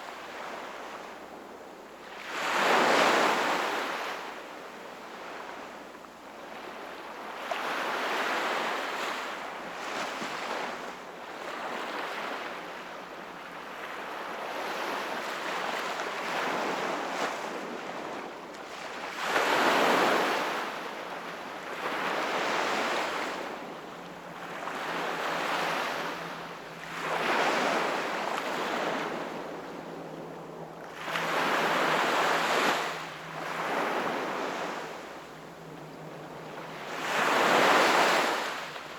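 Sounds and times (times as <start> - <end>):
sea waves breaking: 13.7 - 38.9.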